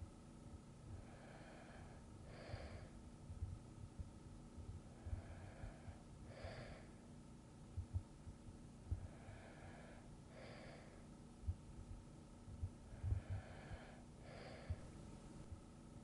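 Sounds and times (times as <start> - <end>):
person breathing softly: 0.9 - 3.1, 4.9 - 7.1, 8.8 - 11.2, 12.6 - 15.5
faint low thumps: 3.3 - 5.8, 7.7 - 9.2, 11.4 - 13.9.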